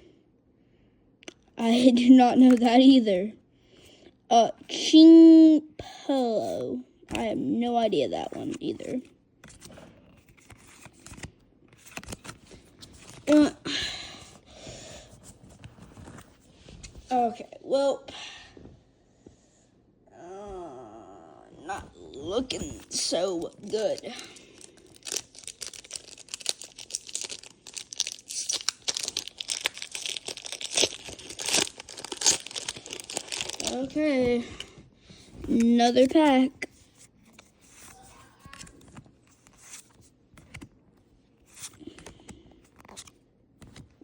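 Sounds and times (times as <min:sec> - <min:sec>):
trading cards sliding and rustling: 0:08.3 - 0:13.4, 0:39.3 - 0:40.6, 0:41.4 - 0:42.1
foil wrapper crinkling: 0:22.8 - 0:34.0.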